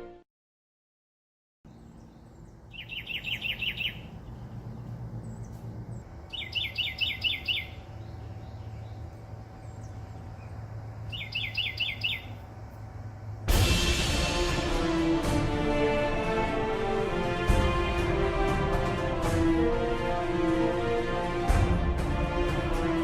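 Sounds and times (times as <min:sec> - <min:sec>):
bird singing whistled notes: 0:01.7 - 0:04.5, 0:06.3 - 0:12.5
low steady hum: 0:01.7 - 0:21.4.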